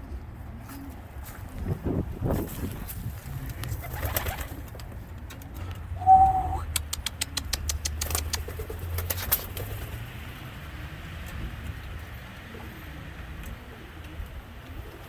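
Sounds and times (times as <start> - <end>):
pigeons cooing: 0.6 - 15.0
wings flapping: 3.4 - 5.0, 6.9 - 10.2
sharp clicks: 6.7 - 8.6.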